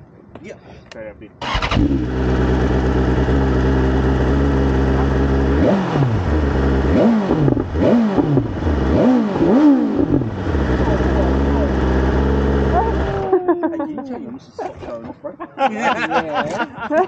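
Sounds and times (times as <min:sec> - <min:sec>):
motorcycle engine idling and revving: 0:01.4 - 0:13.2.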